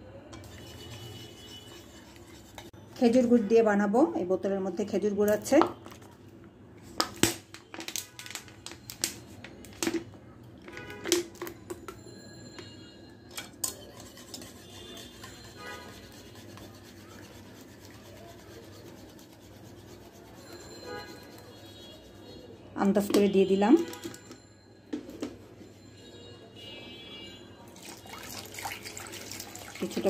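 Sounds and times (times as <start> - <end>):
utensils clicking and knocking: 23.0 - 25.4.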